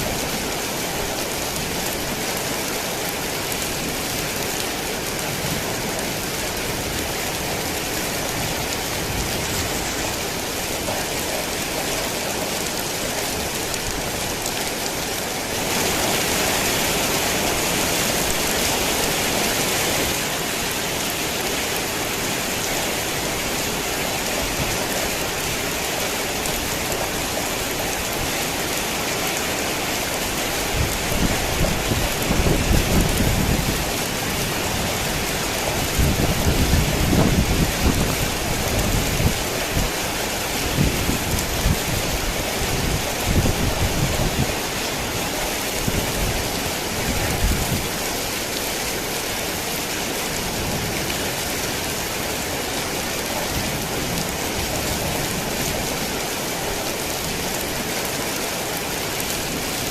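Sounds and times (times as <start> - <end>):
heavy rain falling: 0.0 - 59.9.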